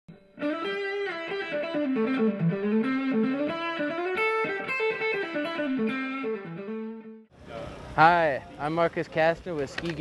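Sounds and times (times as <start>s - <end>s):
plucked instrumental melody: 0.1s - 7.3s.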